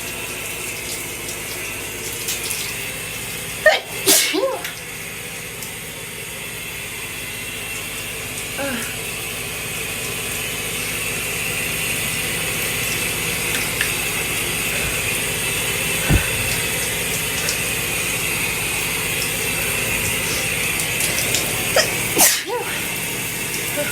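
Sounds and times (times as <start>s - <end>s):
shower water running: 0.0s - 23.9s
short dull thud: 16.0s - 16.5s.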